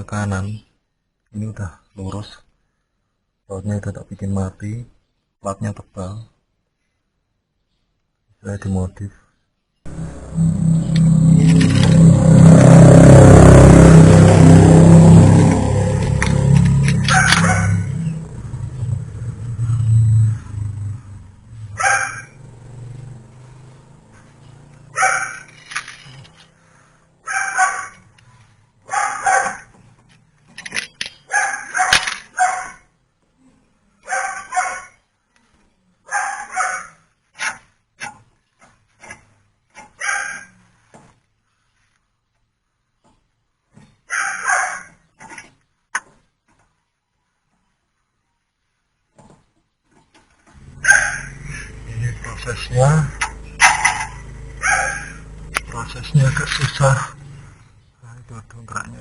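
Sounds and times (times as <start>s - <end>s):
vehicle engine running: 9.9s - 27.0s, 50.5s - 57.8s
animal calls: 15.5s - 22.4s, 50.6s - 57.8s.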